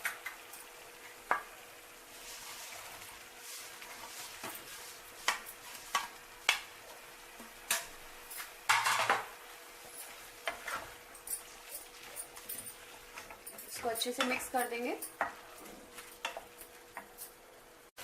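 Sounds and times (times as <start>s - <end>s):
low sizzle: 0.0s - 18.0s
spoon scraping cooking pan: 2.2s - 6.7s, 7.7s - 17.4s.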